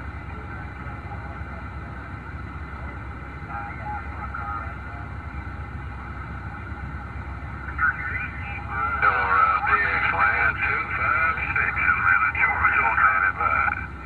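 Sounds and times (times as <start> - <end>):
radio static hiss: 7.5 - 13.9
faint garbled radio voice: 7.6 - 13.9.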